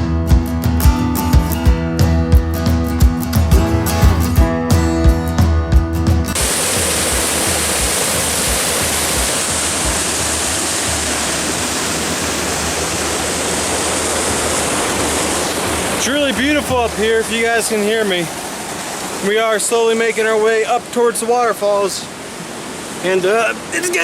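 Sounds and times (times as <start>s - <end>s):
acoustic guitar music: 0.0s - 18.2s
creek rushing over rocks: 6.3s - 24.0s.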